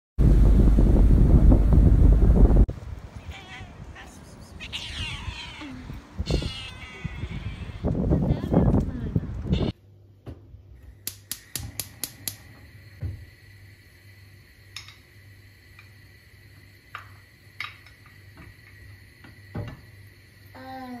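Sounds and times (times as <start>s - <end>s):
faint steady hum: 9.3s - 21.0s.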